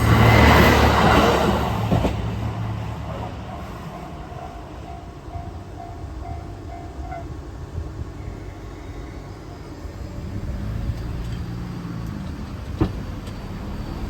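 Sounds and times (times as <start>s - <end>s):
vehicle engine rumble: 7.2s - 14.0s.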